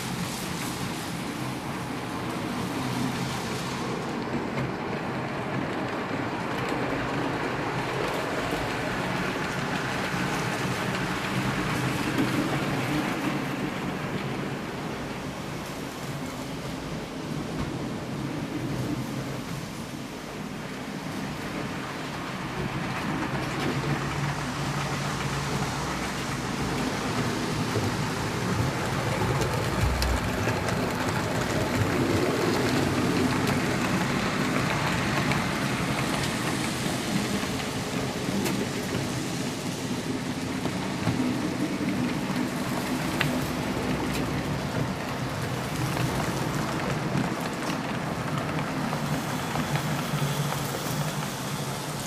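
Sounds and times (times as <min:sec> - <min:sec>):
model train wheels rattling: 0:22.7 - 0:38.6.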